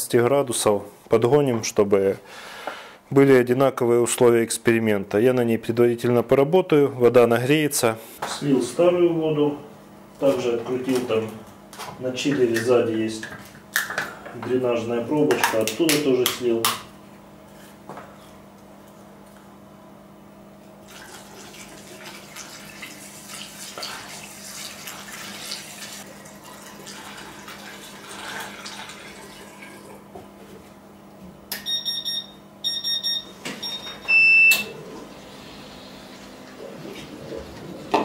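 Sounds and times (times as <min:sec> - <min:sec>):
water trickling into a tank: 0:20.8 - 0:30.0.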